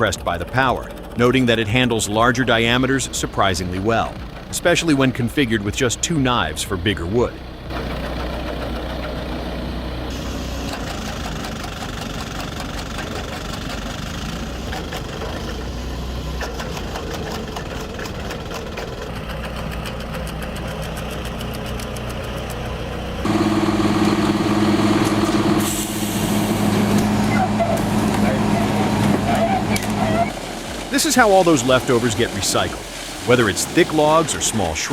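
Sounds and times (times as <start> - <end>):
wood chipper engine drone: 0.0 - 34.9
rapid clicks: 7.6 - 34.9
machine hum with steady tone: 23.2 - 30.9.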